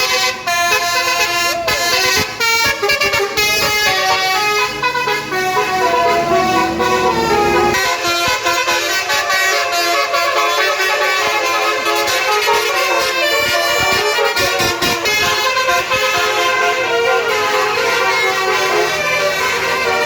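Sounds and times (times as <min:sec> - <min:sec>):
bus air horns playing melody: 0:00.0 - 0:20.0
low bus rumble: 0:00.0 - 0:20.0.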